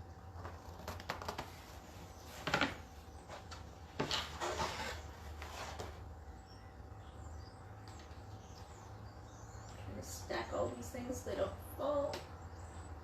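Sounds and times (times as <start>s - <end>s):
wooden boards scraping and knocking: 4.0s - 6.0s.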